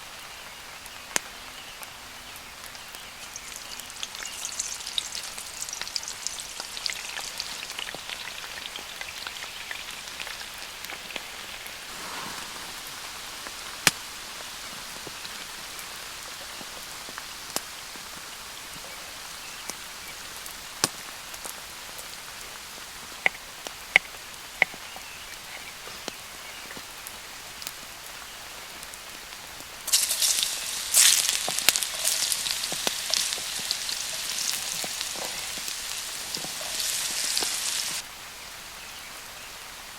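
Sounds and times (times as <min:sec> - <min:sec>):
steady rain: 0:00.0 - 0:39.9
loud crackling hiss: 0:02.4 - 0:39.9.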